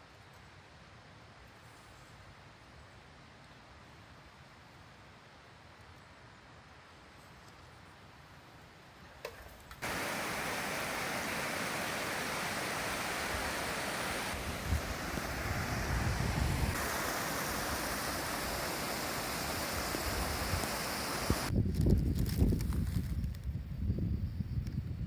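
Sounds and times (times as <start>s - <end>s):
river water rushing: 9.8s - 21.5s.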